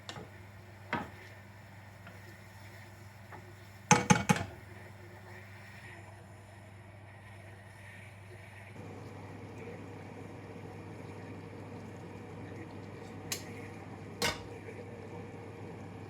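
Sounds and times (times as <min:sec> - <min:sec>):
utensil clinking against cookware: 0:03.9 - 0:04.5, 0:14.2 - 0:14.6
liquid bubbling in a pot: 0:08.8 - 0:16.0.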